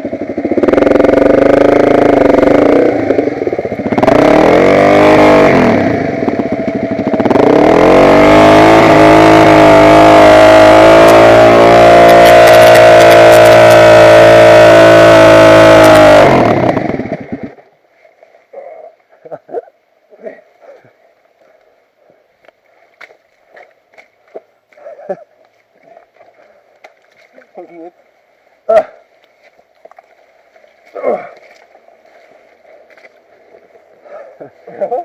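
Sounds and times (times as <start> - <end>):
motocross bike engine revving: 0.0 - 17.6.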